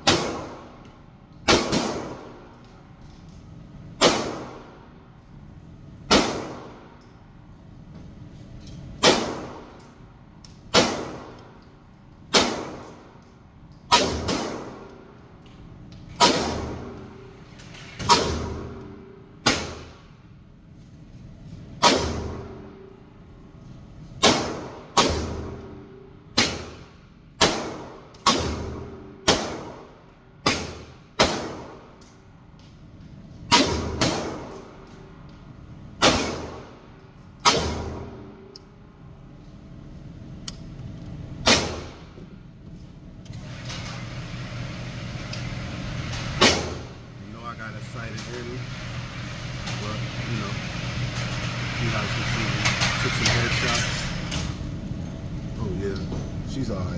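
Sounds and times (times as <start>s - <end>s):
rifle shots echoing indoors: 0.0s - 3.1s, 4.0s - 5.2s, 6.0s - 7.2s, 9.0s - 15.4s, 16.2s - 17.3s, 18.0s - 20.3s, 21.8s - 23.0s, 24.1s - 32.2s, 33.5s - 38.8s, 41.4s - 42.2s, 46.2s - 47.0s.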